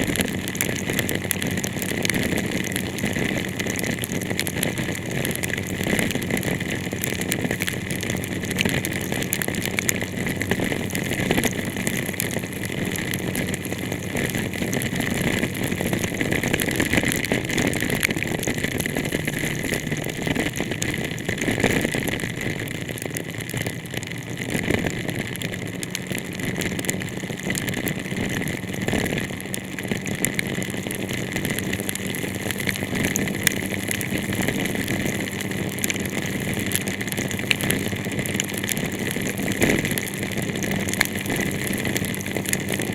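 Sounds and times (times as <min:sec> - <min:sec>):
heavy rain on a car: 0:00.0 - 0:42.9.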